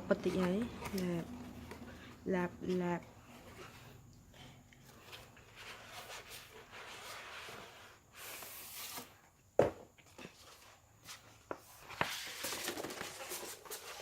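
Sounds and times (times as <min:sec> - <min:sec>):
paper packaging rustling: 0:11.7 - 0:14.0.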